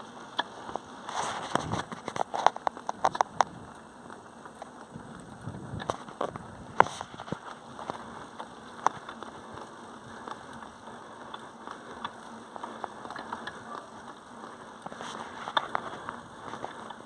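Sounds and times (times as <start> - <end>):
bike tyres rolling on gritty trail: 0.0 - 17.0
sharp clicks and pops: 0.3 - 3.6.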